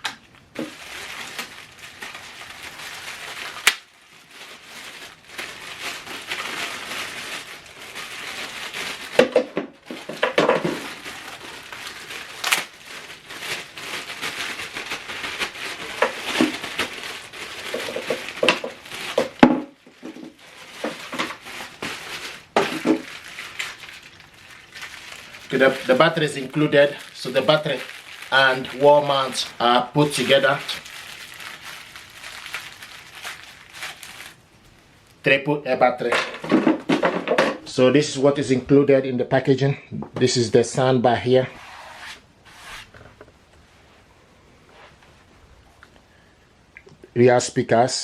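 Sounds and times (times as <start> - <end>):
plastic packaging crinkling: 0.0 - 35.3.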